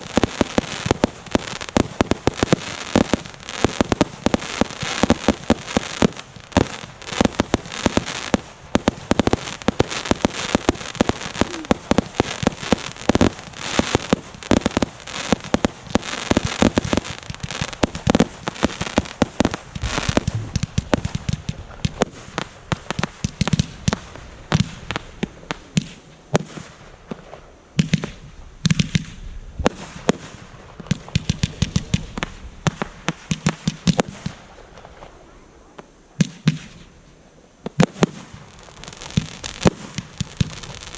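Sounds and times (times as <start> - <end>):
fireworks bangs and crackling: 0.0 - 40.9
low firework thumps: 19.3 - 35.2.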